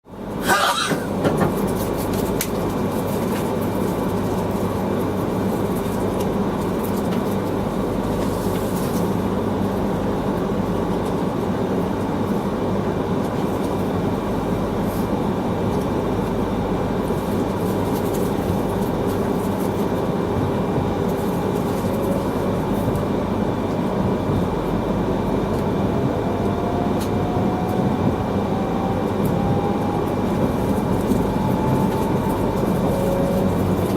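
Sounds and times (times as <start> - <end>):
train cabin running noise: 0.1 - 33.9
man sneezing: 0.4 - 1.1
train whine rising in pitch: 20.2 - 33.9.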